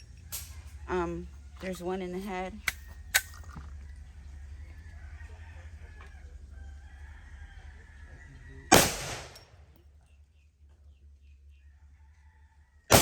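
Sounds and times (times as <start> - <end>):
pistol gunshot with echo: 8.7 - 9.6.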